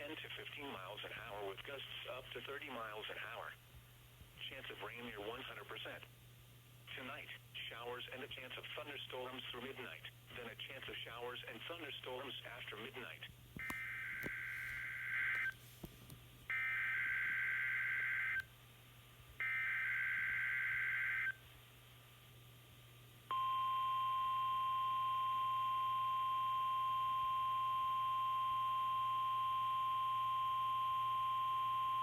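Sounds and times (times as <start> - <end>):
steady warning alarm tone: 16.5 - 18.4, 19.4 - 21.4.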